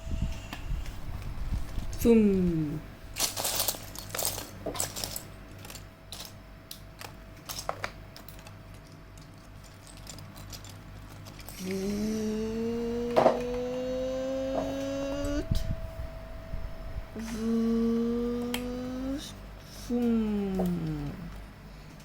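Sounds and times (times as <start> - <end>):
person humming rising note: 11.6 - 21.3.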